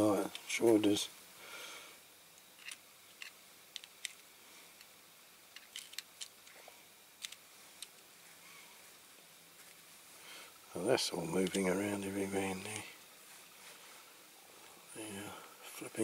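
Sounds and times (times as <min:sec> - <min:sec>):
clicks of model car parts: 0:02.4 - 0:04.2, 0:05.6 - 0:06.6, 0:07.2 - 0:08.0.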